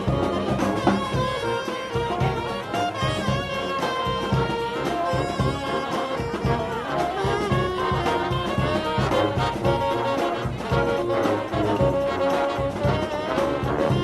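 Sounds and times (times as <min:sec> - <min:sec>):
brass music over a beat: 0:00.0 - 0:14.0.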